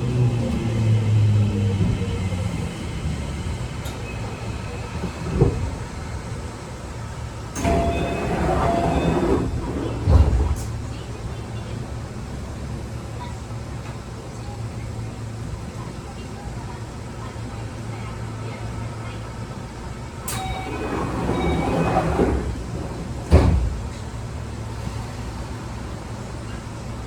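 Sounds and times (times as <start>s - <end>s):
train rolling noise: 0.0s - 27.0s
electric train motor tones: 7.6s - 10.8s, 20.3s - 23.5s.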